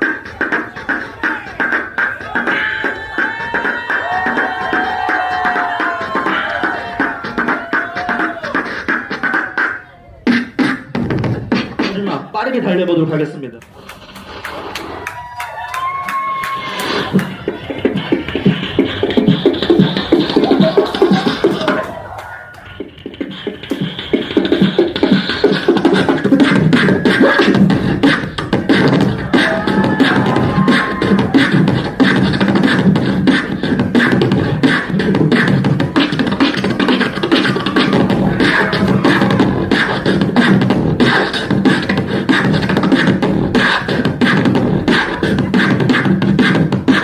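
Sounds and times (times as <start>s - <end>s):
beatboxing: 0.0s - 47.0s.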